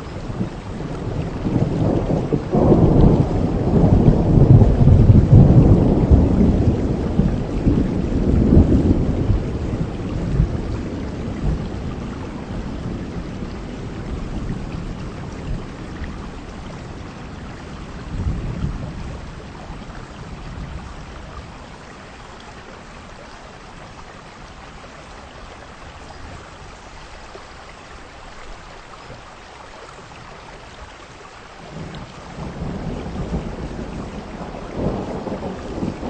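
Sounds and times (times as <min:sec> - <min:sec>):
thunder rumble: 0:00.0 - 0:21.9, 0:31.7 - 0:36.0
heavy rain: 0:00.0 - 0:36.0.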